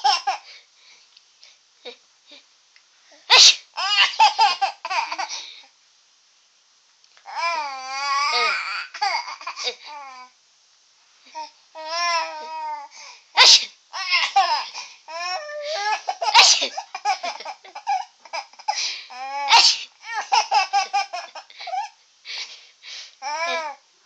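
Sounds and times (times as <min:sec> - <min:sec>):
baby laughing and babbling: 0:00.0 - 0:00.5, 0:03.8 - 0:05.4, 0:07.3 - 0:10.4, 0:11.3 - 0:12.9, 0:14.0 - 0:22.0, 0:23.2 - 0:23.8
person sneezing: 0:03.2 - 0:03.7, 0:13.4 - 0:13.8, 0:15.7 - 0:16.9, 0:18.7 - 0:20.0.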